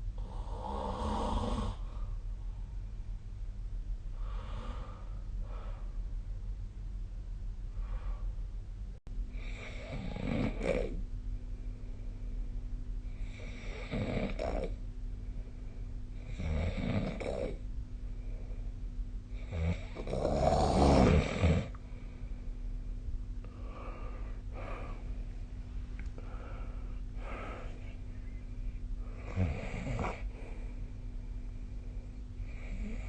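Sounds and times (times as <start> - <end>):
person snoring: 0.2 - 2.1, 9.4 - 11.0, 13.2 - 14.8, 16.2 - 17.6, 19.4 - 21.8, 29.0 - 30.6, 32.4 - 33.0.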